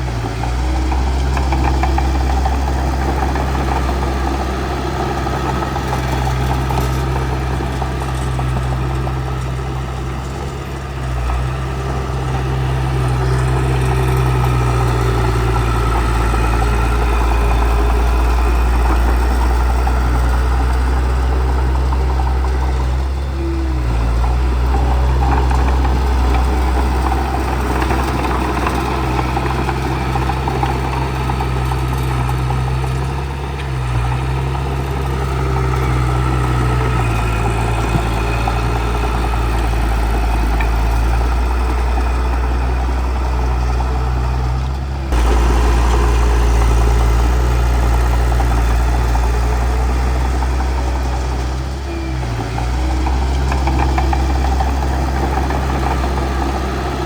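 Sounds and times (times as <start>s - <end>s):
bulldozer diesel engine humming: 0.0s - 57.0s.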